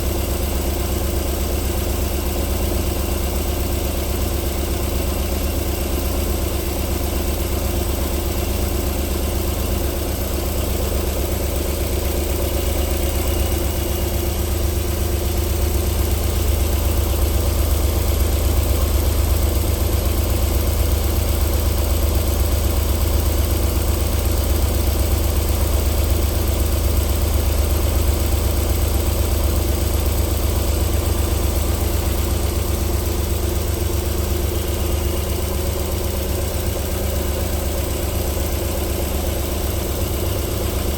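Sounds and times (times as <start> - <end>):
car engine idling: 0.0 - 40.9.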